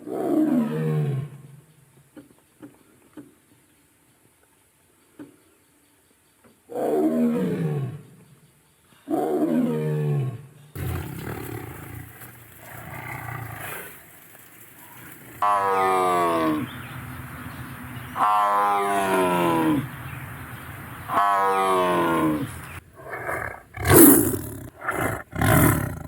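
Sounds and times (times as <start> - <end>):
tiger roaring: 9.5 - 14.0, 18.2 - 19.9, 21.1 - 26.0.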